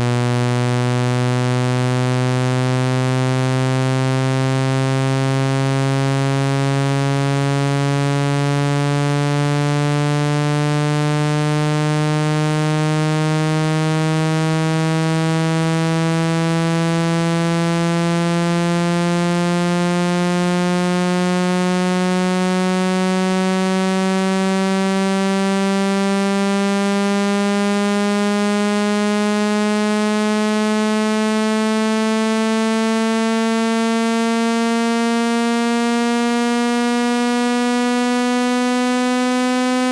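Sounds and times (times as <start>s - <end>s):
buzzy rising synthesized tone: 0.0s - 5.4s.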